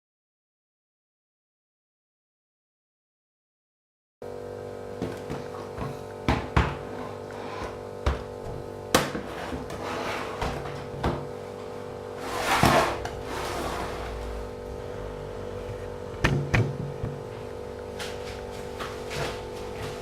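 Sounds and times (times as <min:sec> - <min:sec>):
steady hum: 0:04.2 - 0:20.0
scraping or rustling: 0:09.2 - 0:10.8, 0:12.1 - 0:14.4
laptop knocks and clicks: 0:16.2 - 0:17.2.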